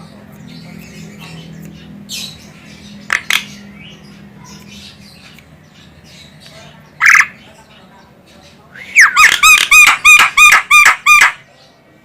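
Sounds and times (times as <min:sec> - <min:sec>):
myna chattering and squawking: 0:06.8 - 0:07.7, 0:08.8 - 0:11.5.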